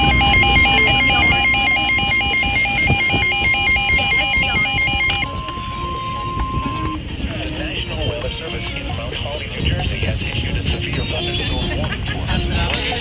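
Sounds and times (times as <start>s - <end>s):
two-pitch alert beeping: 0.0s - 7.0s
steady high tone: 0.0s - 8.8s.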